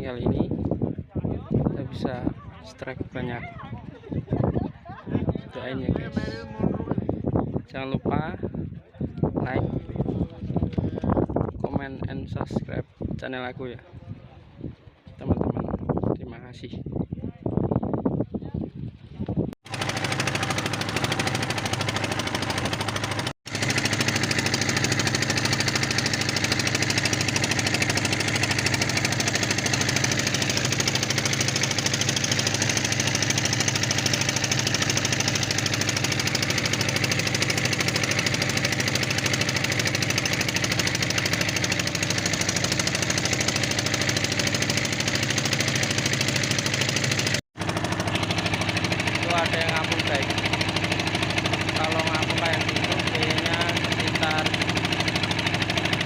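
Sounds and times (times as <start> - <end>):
boat engine knocking: 19.7 - 56.0.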